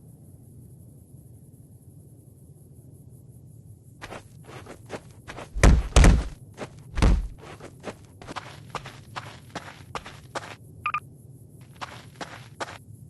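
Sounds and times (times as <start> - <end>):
heavy thuds: 4.0 - 10.6
knocks and clatter: 5.5 - 6.4.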